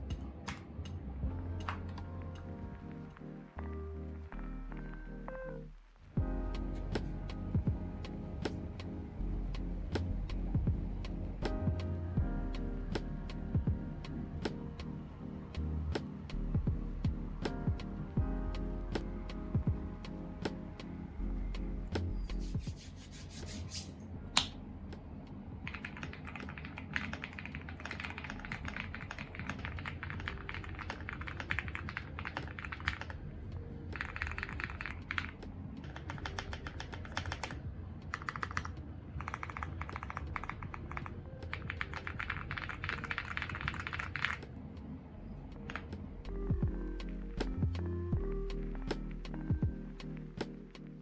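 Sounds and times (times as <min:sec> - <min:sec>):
mechanical keyboard typing: 0:25.7 - 0:33.2, 0:34.0 - 0:44.4.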